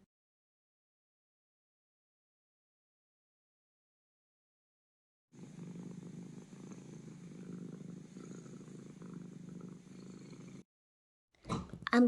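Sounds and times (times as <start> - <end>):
cat purring: 5.4 - 10.7.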